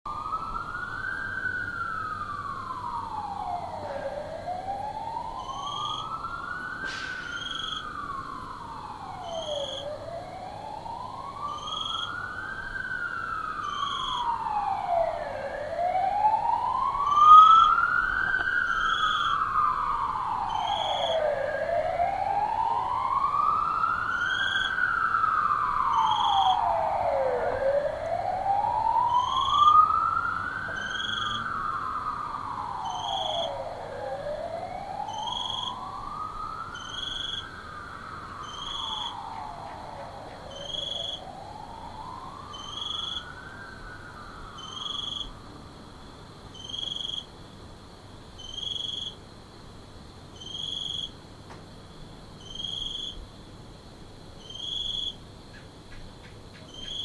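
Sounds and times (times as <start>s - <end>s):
police siren wailing: 0.1s - 45.7s.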